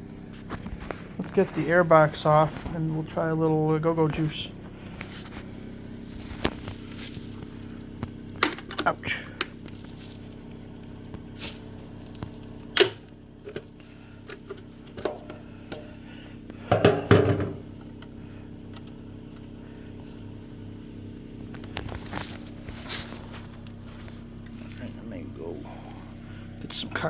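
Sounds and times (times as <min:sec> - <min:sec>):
steady low hum: 0:00.0 - 0:27.0
tools and plastic parts clattering: 0:08.3 - 0:10.4, 0:16.7 - 0:17.6.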